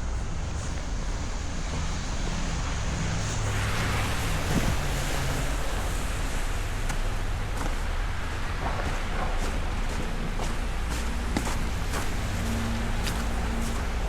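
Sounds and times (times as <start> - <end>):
traffic engine hum: 0.0 - 14.0
tyres hissing on slush: 0.3 - 7.3, 10.8 - 14.0.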